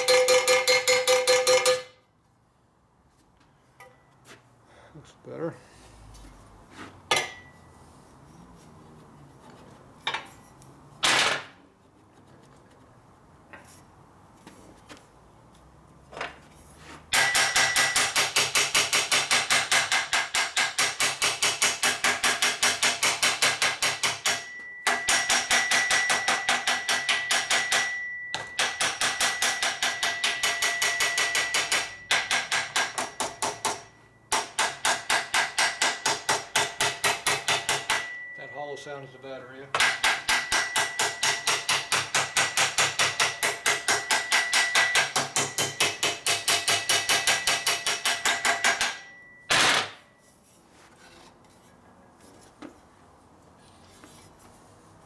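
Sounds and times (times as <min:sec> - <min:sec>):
hammer striking metal pipe: 0:00.0 - 0:02.0, 0:07.1 - 0:07.6, 0:17.1 - 0:38.8, 0:39.7 - 0:50.0.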